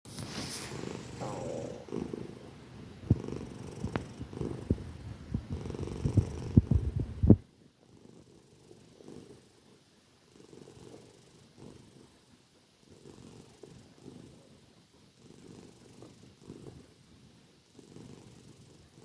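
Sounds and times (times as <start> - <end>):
cat snoring loudly: 0.2 - 4.8, 5.4 - 6.9, 7.9 - 9.5, 10.3 - 12.1, 12.9 - 14.5, 15.2 - 16.9, 17.7 - 19.0.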